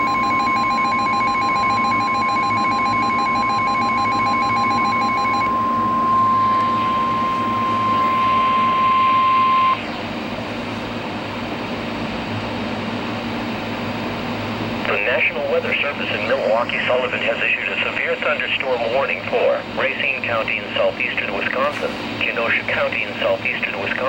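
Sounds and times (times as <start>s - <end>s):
rapid pulsing beeps: 0.0s - 9.8s
steady high alarm tone: 0.0s - 9.8s
radio hum and hiss: 3.9s - 10.4s, 14.6s - 24.0s.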